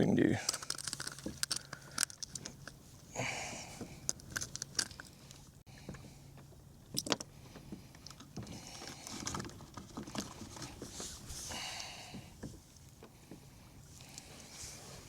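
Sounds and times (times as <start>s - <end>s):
rustling: 8.7s - 11.6s.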